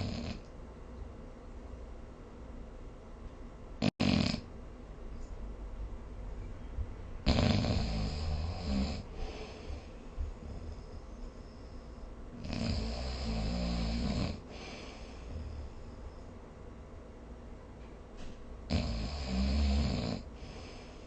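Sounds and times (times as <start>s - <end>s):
person snoring: 3.9s - 4.4s, 7.2s - 10.9s, 12.4s - 15.9s, 18.7s - 21.0s
quiet breathing: 7.7s - 16.6s, 19.8s - 21.0s.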